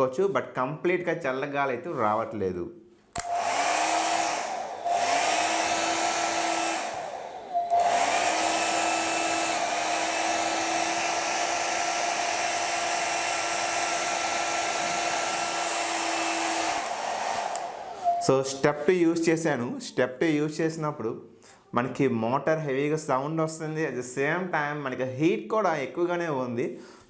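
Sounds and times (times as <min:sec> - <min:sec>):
hair dryer fan motor whining: 0:03.2 - 0:19.3.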